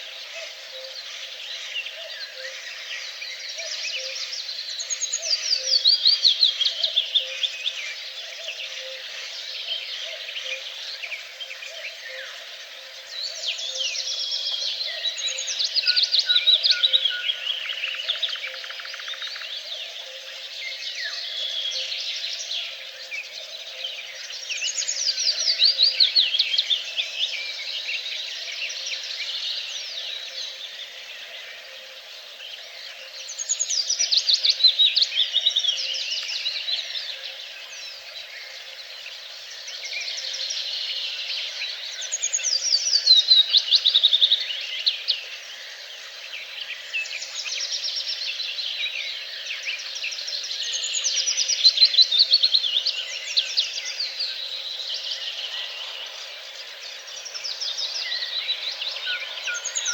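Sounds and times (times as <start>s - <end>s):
birds chirping: 52.6s - 59.9s.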